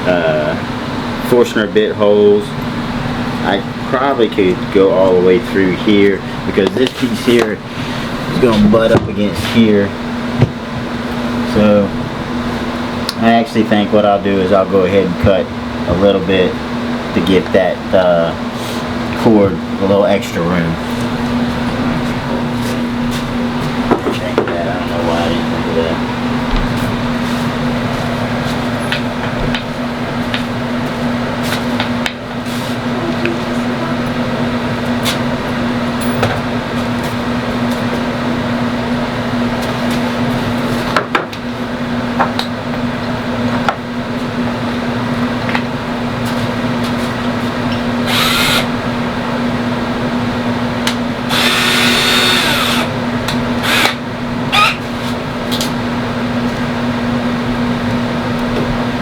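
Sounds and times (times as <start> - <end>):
steady hum: 0.0 - 59.0
power tool cutting plastic sheet: 48.0 - 48.8, 51.3 - 53.0, 53.6 - 55.0.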